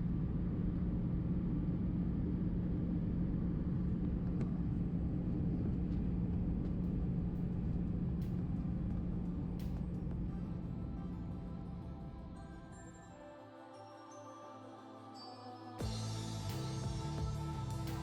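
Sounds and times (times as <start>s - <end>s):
aircraft cabin engine rumble: 0.0s - 12.2s.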